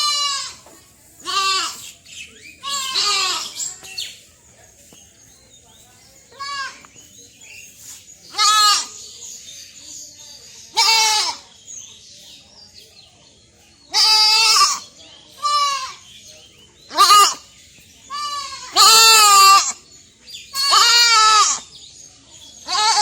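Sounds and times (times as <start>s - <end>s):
young goat bleating: 0.0s - 2.0s, 2.6s - 3.9s, 6.3s - 6.9s, 8.3s - 9.0s, 10.7s - 11.4s, 13.9s - 16.0s, 16.9s - 17.5s, 18.1s - 19.8s, 20.5s - 21.7s, 22.6s - 23.0s.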